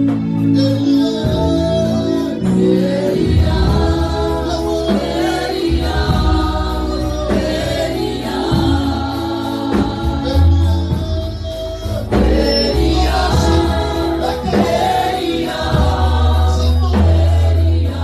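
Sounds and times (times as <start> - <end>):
band with strong bass line: 0.0 - 18.0
group of voices singing: 0.0 - 18.0.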